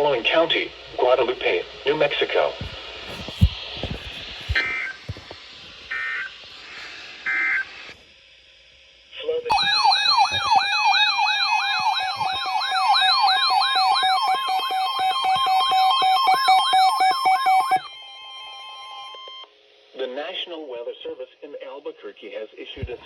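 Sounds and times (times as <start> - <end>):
electronic data bursts: 3.4 - 5.2
sweeping siren-like alert tone: 9.5 - 19.5.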